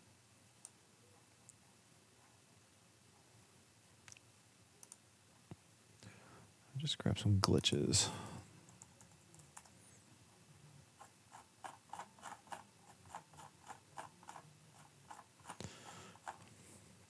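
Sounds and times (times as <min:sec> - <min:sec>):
computer mouse clicking: 0:04.8 - 0:05.0, 0:08.7 - 0:09.8.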